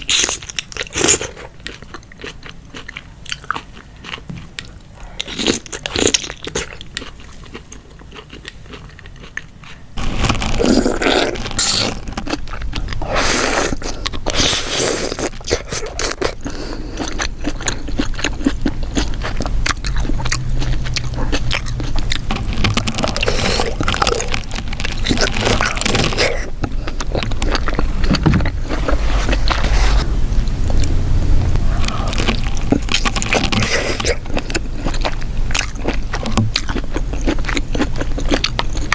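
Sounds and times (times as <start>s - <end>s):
person chewing and smacking lips: 0.0s - 30.9s, 31.5s - 38.9s
low hum: 18.6s - 36.6s.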